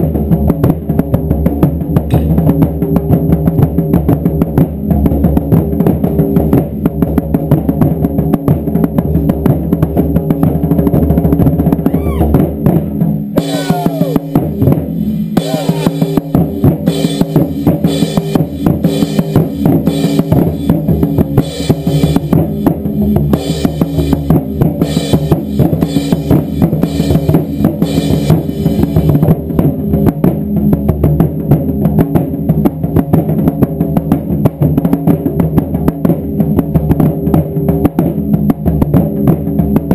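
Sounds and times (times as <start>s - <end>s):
taiko drums beating: 0.1s - 27.5s
sharp bright drum strokes: 2.1s - 2.7s, 13.4s - 22.5s.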